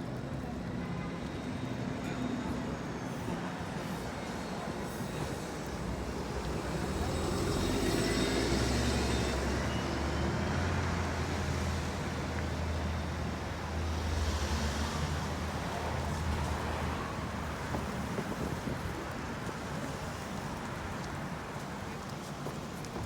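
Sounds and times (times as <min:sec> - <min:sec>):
wind noise on microphone: 0:17.5 - 0:20.3.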